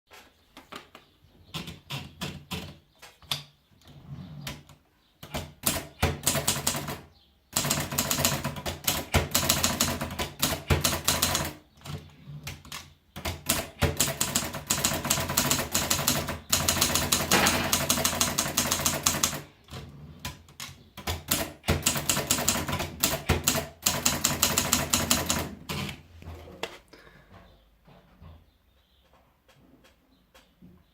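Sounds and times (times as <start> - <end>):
manual typewriter keystrokes: 4.4 - 26.0.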